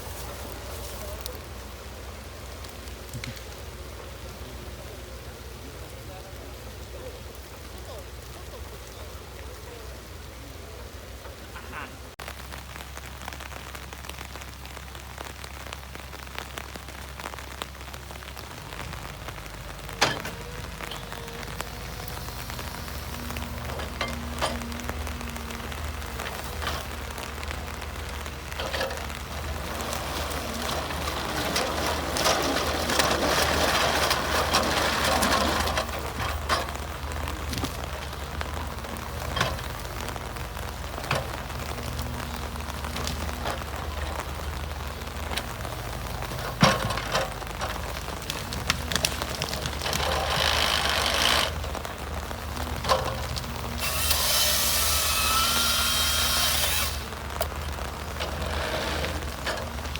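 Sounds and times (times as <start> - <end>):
log crackling and rattling: 0.0 - 59.9
diesel engine running: 13.2 - 59.9.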